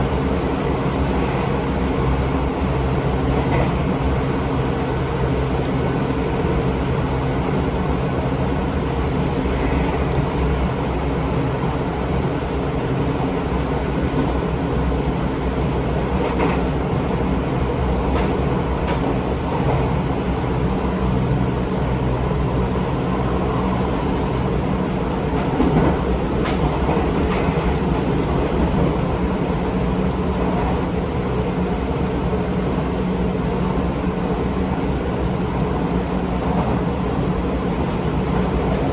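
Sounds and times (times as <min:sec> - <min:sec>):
train wheels rumbling on rail: 0:00.0 - 0:38.9
faint rail-joint clicks: 0:03.3 - 0:04.3, 0:25.3 - 0:29.0.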